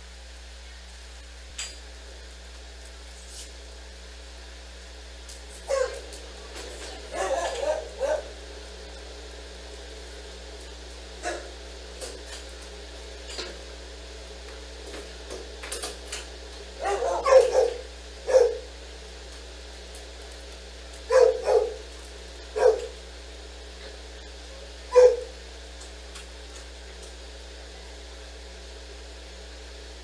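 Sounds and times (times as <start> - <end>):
low room hum: 0.0 - 30.0
dog barking: 5.7 - 6.1, 6.8 - 8.4, 11.2 - 11.6, 16.8 - 18.7, 21.1 - 21.9, 22.5 - 23.0, 24.9 - 25.4.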